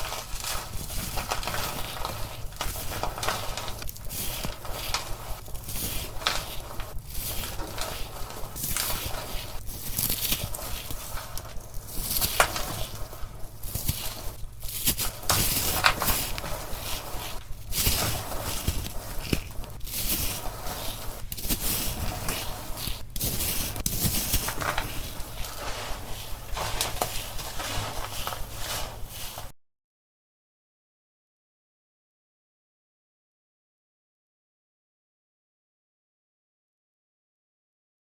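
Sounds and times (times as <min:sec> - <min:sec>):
crumbly blocks crunching: 0:00.0 - 0:29.5.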